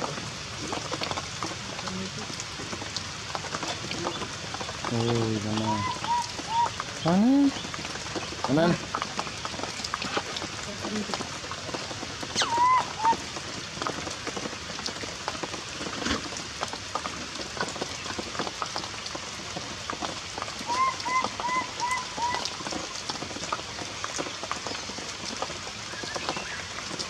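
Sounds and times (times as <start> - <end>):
heavy rain falling: 0.0 - 27.0
short high calls: 12.4 - 13.2.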